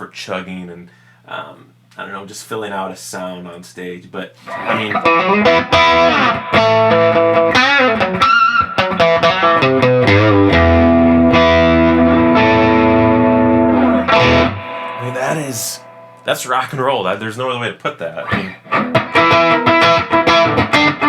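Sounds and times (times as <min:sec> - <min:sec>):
overdriven electric guitar: 0:04.6 - 0:15.1, 0:18.4 - 0:21.0.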